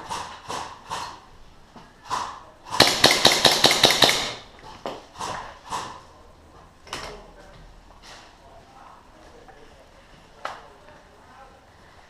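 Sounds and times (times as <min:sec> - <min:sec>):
airsoft gun shots: 0:02.1 - 0:04.5.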